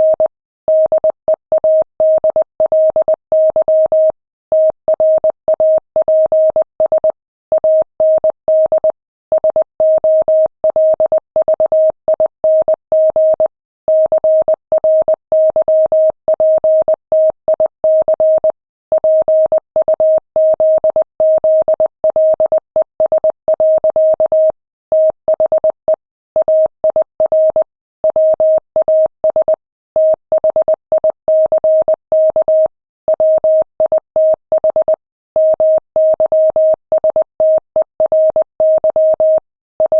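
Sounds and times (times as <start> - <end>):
morse code beeps: 26.4 - 39.9.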